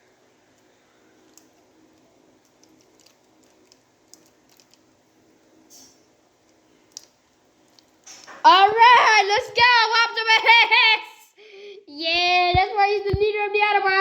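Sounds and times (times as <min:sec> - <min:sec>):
plastic action figure clicking: 0:00.6 - 0:04.9, 0:06.5 - 0:08.4.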